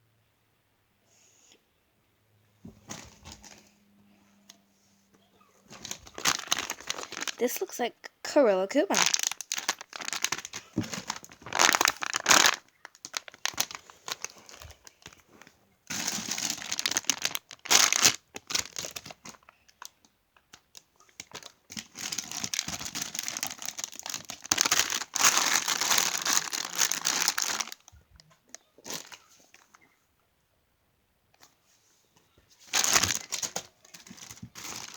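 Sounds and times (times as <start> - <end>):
plastic crinkling and rustling: 2.7 - 3.8, 5.6 - 7.9, 8.7 - 30.0, 32.5 - 34.9.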